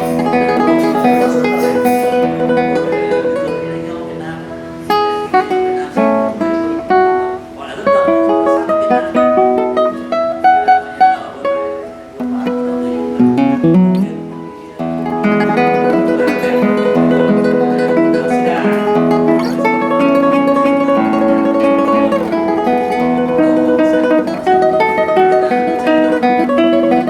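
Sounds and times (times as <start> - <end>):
classical guitar played solo: 0.0 - 27.0.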